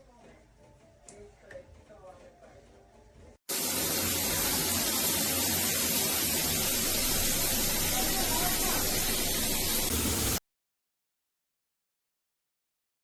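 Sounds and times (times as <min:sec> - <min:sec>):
water spraying from shower head: 0:03.5 - 0:10.4.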